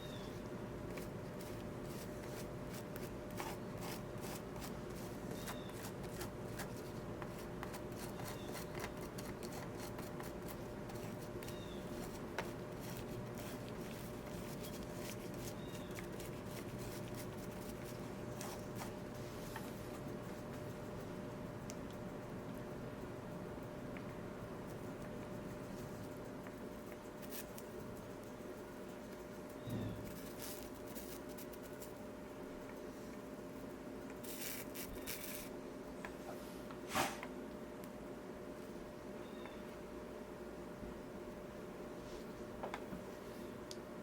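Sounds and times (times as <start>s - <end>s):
faint hum: 0.0s - 44.0s
solder flux crackling: 30.0s - 35.6s.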